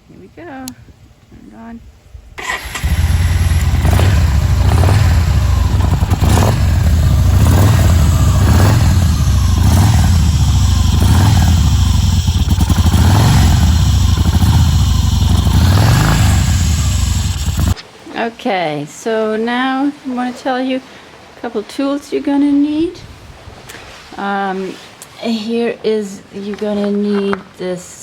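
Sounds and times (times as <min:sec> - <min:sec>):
motorcycle engine running: 0:02.6 - 0:17.8.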